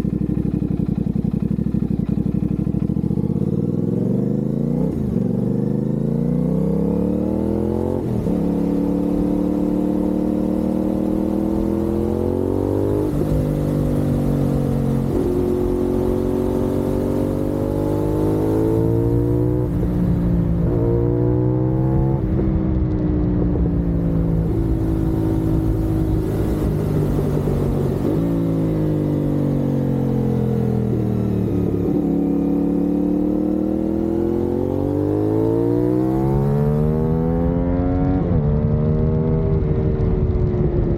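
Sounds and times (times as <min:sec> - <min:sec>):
motorcycle engine accelerating: 0:00.0 - 0:40.9
wind noise on microphone: 0:18.5 - 0:29.4, 0:35.4 - 0:40.9.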